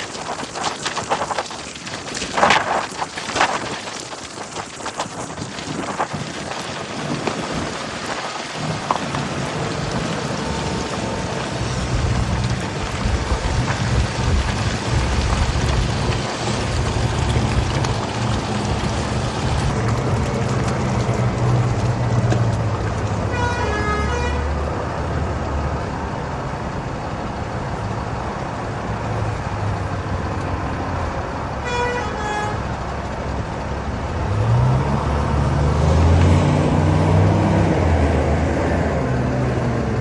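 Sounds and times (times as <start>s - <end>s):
heavy diesel engine running: 0.0s - 40.0s
short horn toots: 23.3s - 24.6s, 31.6s - 32.7s.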